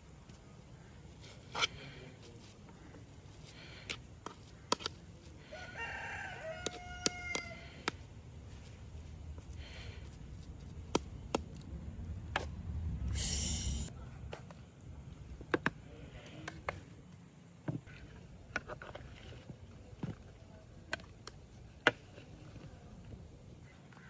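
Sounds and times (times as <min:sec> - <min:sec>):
rooster crowing: 0:05.4 - 0:07.9.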